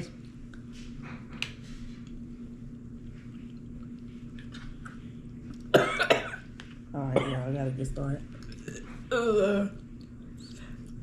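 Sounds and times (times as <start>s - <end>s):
steady low hum: 0.0s - 11.0s
soft chewing: 0.2s - 5.8s, 8.3s - 11.0s.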